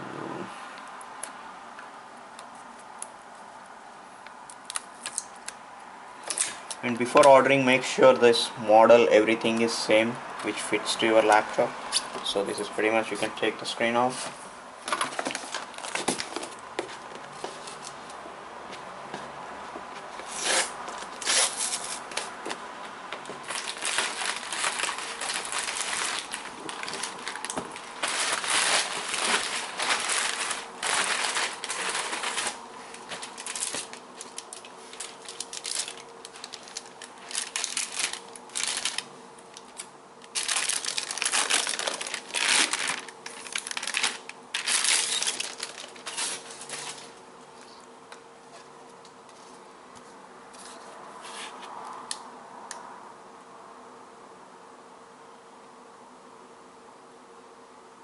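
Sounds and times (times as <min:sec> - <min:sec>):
plastic packaging crinkling: 0:14.8 - 0:16.6, 0:20.2 - 0:22.6, 0:23.2 - 0:47.8.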